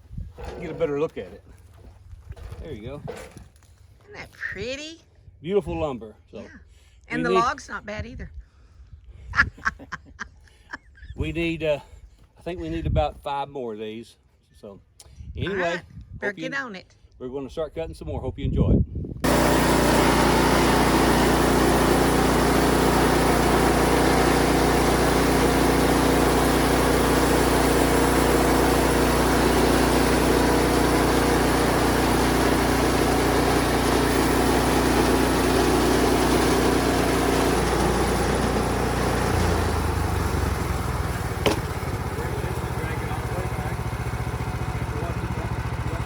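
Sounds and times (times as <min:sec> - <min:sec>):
band sawmill engine running: 0:19.2 - 0:46.0.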